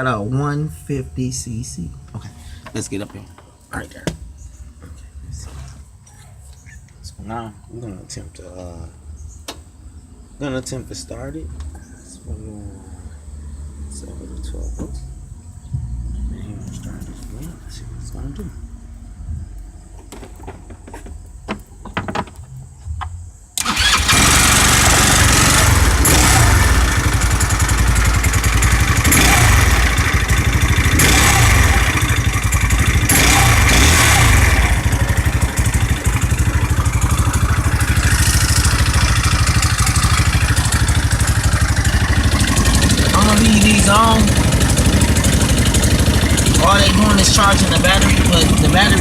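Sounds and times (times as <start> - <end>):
scooter engine running: 23.6 - 49.0.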